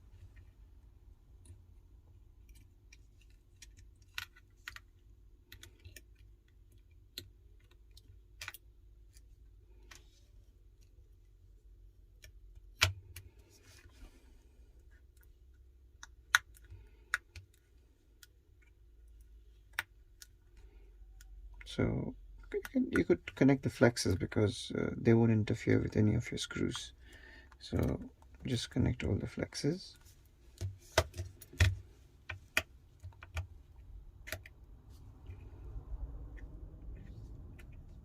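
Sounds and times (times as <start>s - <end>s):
faint steady hum: 0.0s - 38.0s.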